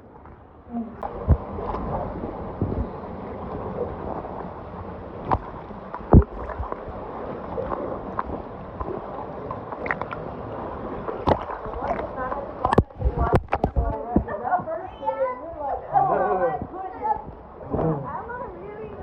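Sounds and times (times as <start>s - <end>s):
water sloshing and gurgling: 0.0s - 19.0s
thumps and splashes: 1.0s - 4.5s, 5.2s - 14.9s, 16.5s - 18.2s.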